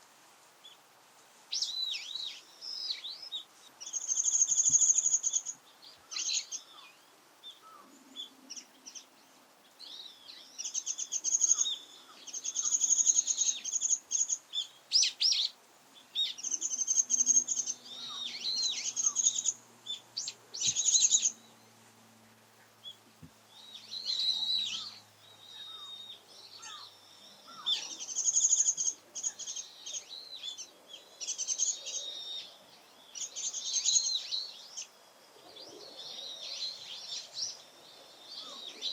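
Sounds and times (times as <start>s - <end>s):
bird twittering: 16.2s - 21.7s, 22.8s - 32.5s.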